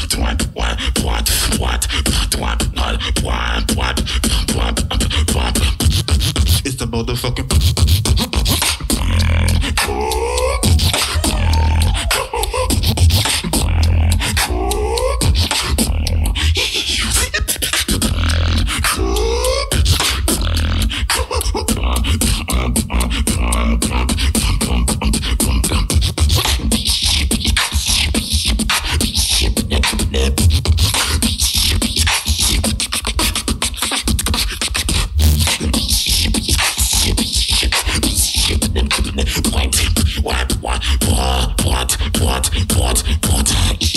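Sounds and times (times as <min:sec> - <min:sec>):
beatboxing bass kicks: 0:00.0 - 0:43.9
beatboxing hi-hat clicks: 0:00.0 - 0:43.9
rising vocal sweep: 0:08.9 - 0:25.0.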